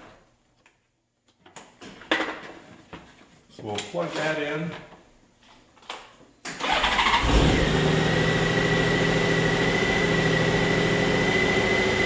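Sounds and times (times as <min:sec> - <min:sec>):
motorcycle engine cranking and idling: 0:06.6 - 0:12.0.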